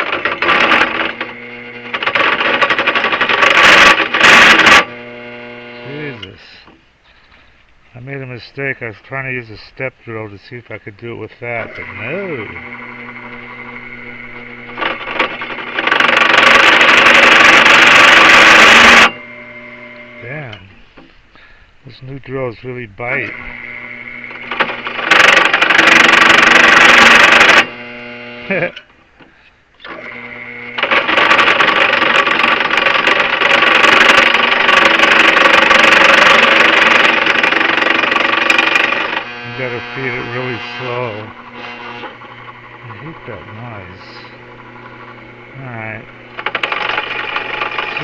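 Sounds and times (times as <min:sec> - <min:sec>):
drill bit grinding into metal: 0:00.0 - 0:07.5, 0:11.4 - 0:21.2, 0:23.1 - 0:48.0.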